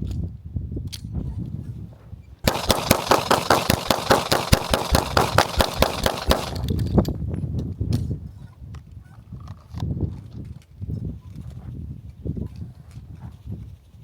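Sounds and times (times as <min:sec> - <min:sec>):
rapid gunfire: 0:02.5 - 0:06.8.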